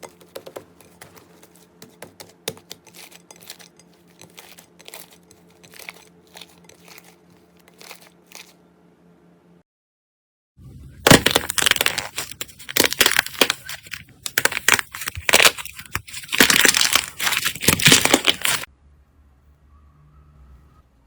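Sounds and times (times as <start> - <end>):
crunchy slime crackling: 2.7 - 8.6, 11.0 - 18.7.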